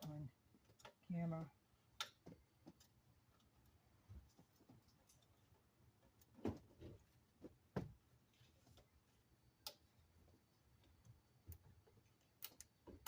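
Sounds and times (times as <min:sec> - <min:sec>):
plastic parts clicking and knocking: 0:10.8 - 0:13.0.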